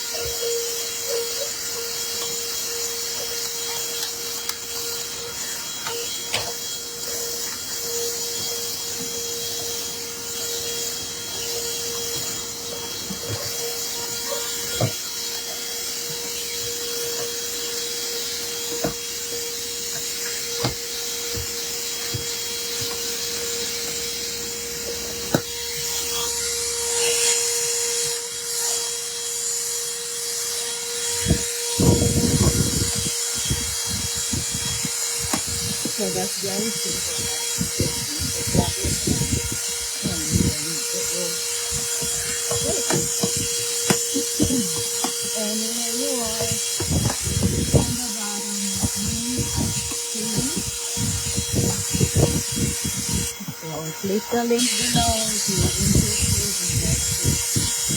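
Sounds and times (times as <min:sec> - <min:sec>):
handheld vacuum cleaner running: 0:00.0 - 0:57.9
nozzle knocking against interior: 0:41.7 - 0:45.3.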